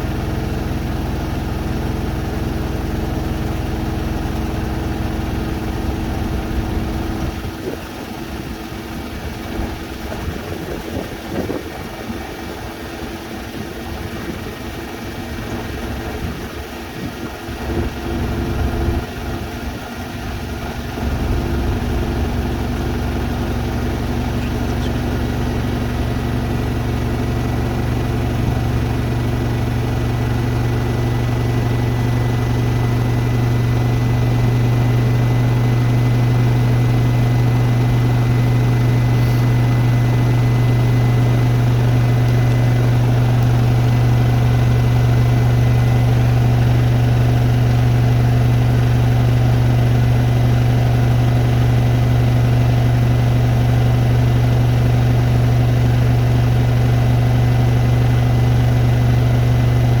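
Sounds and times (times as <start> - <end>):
washing machine spinning: 19.1 - 60.0.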